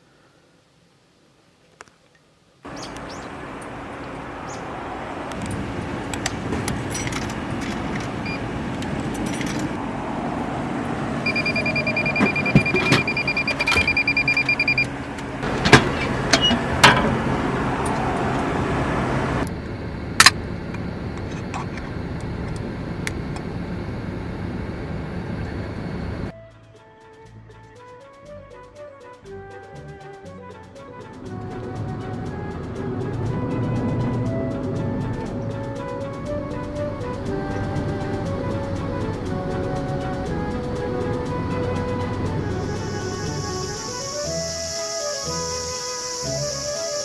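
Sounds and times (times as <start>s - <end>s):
car road and engine noise: 2.7s - 26.3s, 30.7s - 47.0s
high electronic beep: 11.2s - 14.9s.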